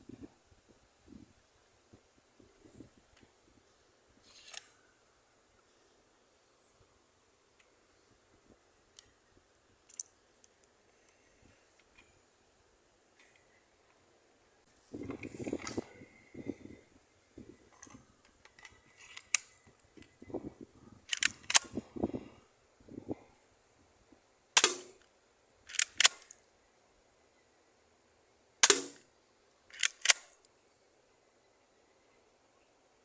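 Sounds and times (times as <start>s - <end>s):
airsoft pistol shots: 24.6s - 25.0s, 28.6s - 29.0s.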